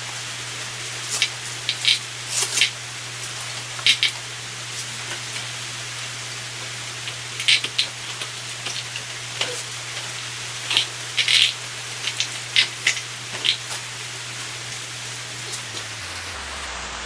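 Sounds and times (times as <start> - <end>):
rain hissing: 0.0 - 17.0.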